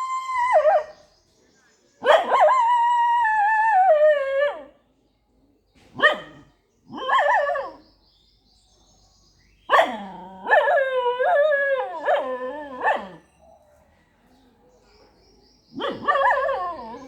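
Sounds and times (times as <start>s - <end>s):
dog yelp: 11.9s - 13.6s.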